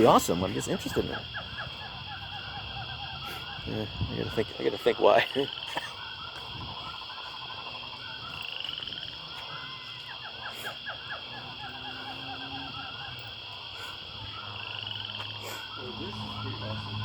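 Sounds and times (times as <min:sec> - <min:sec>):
high buzzing drone: 0:14.0 - 0:17.0.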